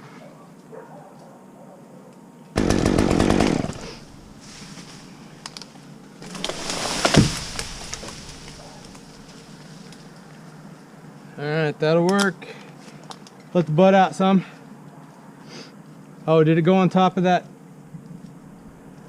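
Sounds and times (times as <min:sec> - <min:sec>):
chainsaw revving: 0:02.6 - 0:04.1.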